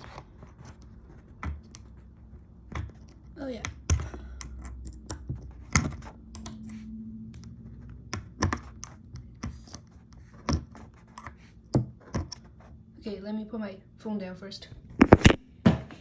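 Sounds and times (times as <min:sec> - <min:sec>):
screwdriver and tweezers clicking: 0:03.0 - 0:06.8.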